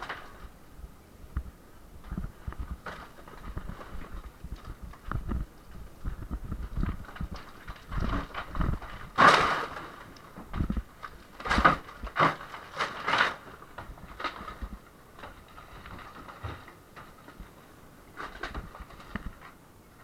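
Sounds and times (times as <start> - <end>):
falling masonry crashing: 0.0 - 0.6, 2.0 - 19.6
knocks and thuds on walls: 1.4 - 13.1.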